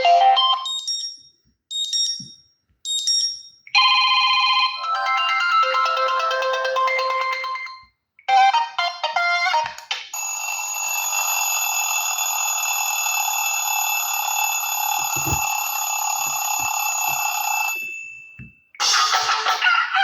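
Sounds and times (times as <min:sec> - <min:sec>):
phone ringing tone: 0:10.2 - 0:18.3.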